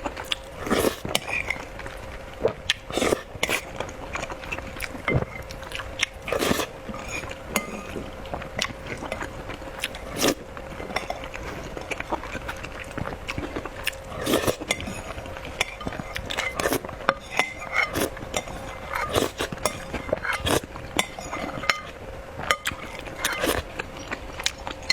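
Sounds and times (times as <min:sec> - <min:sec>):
faint steady hum: 0:00.0 - 0:24.9
wet chewing and lip smacking: 0:04.2 - 0:06.3
spoon clinking against bowl: 0:14.2 - 0:23.6.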